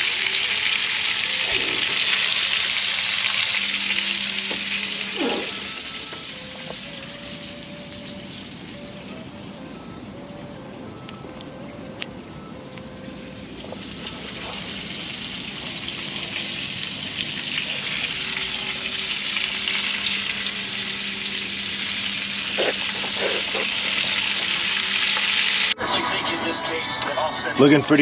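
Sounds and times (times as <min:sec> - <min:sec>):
chicken sizzling in hot grease: 0:00.0 - 0:08.8, 0:13.6 - 0:25.8.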